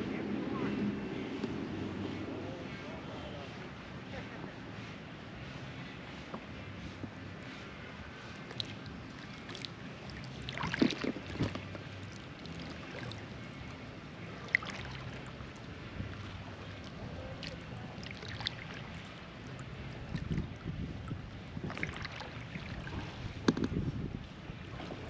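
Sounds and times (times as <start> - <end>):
water lapping against hull: 0.6 - 25.0
paddle dipping in water: 5.5 - 25.0
sharp splashes and knocks: 8.5 - 13.3, 16.1 - 19.1, 21.6 - 23.8.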